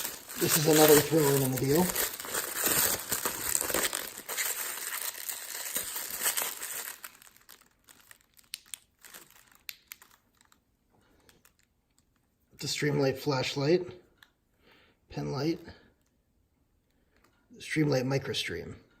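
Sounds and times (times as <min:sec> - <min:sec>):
packaging crinkling: 0:00.0 - 0:10.6, 0:11.2 - 0:12.1.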